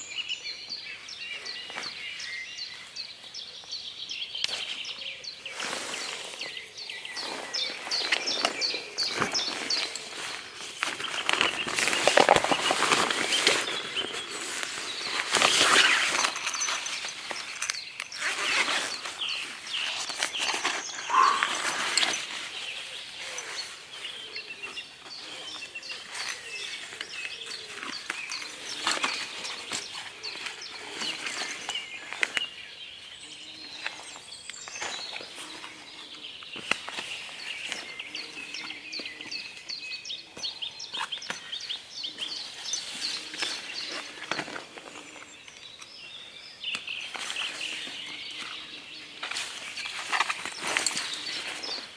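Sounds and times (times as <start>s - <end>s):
songbirds singing: 0.0s - 51.9s.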